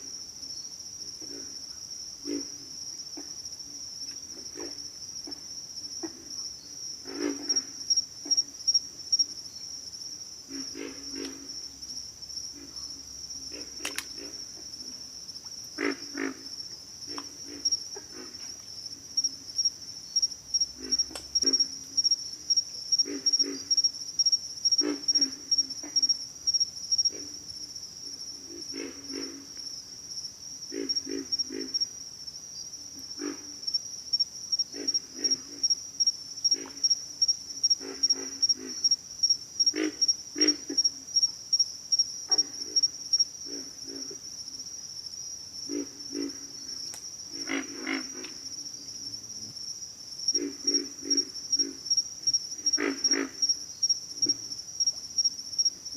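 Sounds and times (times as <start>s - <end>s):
high-pitched insect chorus: 0.0s - 55.9s
frogs grunting: 1.2s - 3.4s, 4.3s - 6.4s, 7.0s - 8.5s, 10.5s - 11.8s, 12.4s - 18.6s, 19.2s - 29.6s, 30.6s - 31.9s, 33.0s - 33.8s, 34.6s - 35.8s, 36.4s - 41.0s, 42.3s - 44.5s, 45.6s - 49.6s, 50.3s - 54.6s.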